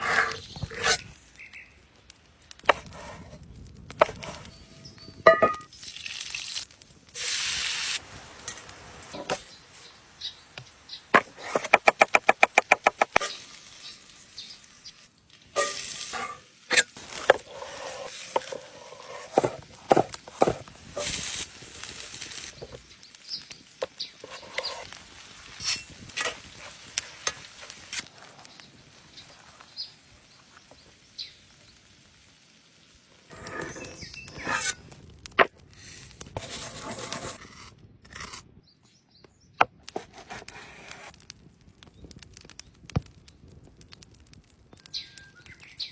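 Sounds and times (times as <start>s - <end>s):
hiss: 7.2s - 10.4s.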